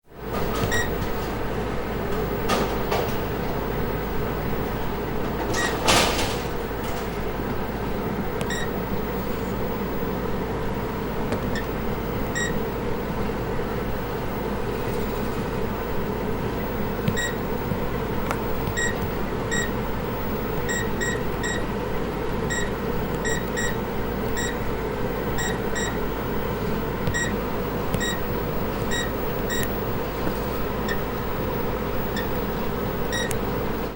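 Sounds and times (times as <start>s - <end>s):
steady background hum: 0.0s - 33.9s
short electronic beeps: 8.4s - 8.7s, 17.1s - 17.4s, 28.0s - 28.2s.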